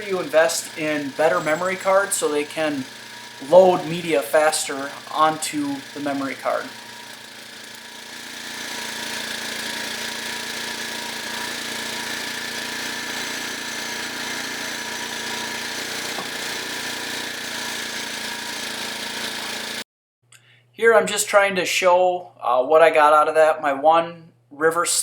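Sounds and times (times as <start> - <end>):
small gasoline engine running: 0.0 - 19.8.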